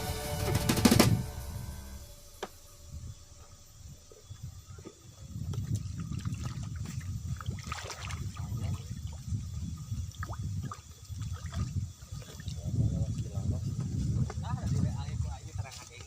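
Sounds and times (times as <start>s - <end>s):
low rumble: 0.0s - 6.0s
water splashing and trickling: 4.1s - 16.0s.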